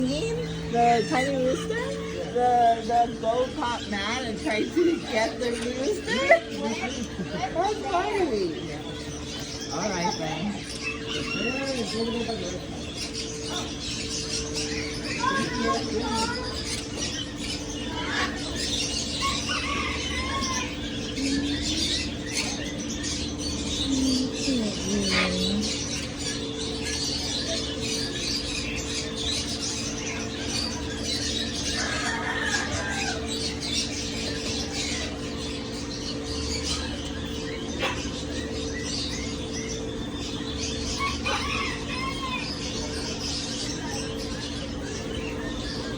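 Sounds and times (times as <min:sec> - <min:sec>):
caged birds chirping and squawking: 0:00.0 - 0:45.9
low hum: 0:00.0 - 0:45.9.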